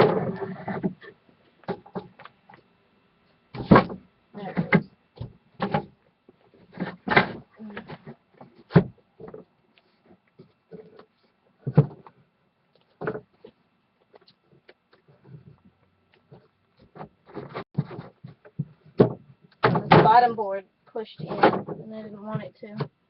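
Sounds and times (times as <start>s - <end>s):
wooden boards knocking: 3.6s - 4.0s, 17.4s - 20.2s.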